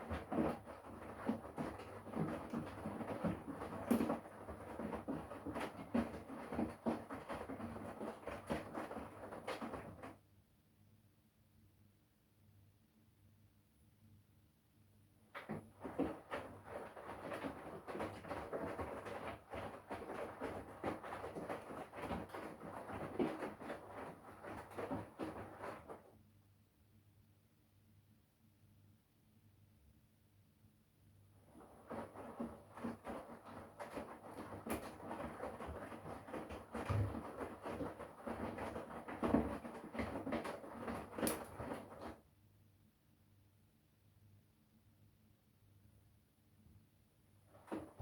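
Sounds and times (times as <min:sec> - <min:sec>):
laundry sloshing in washing machine: 0:00.0 - 0:10.2, 0:15.4 - 0:26.1, 0:31.4 - 0:42.2, 0:47.5 - 0:48.0.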